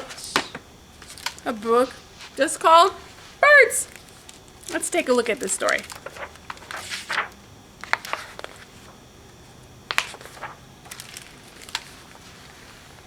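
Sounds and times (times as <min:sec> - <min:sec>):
paper pages rustling: 0:00.0 - 0:02.5, 0:03.1 - 0:13.0
book clicks and taps: 0:09.9 - 0:12.0.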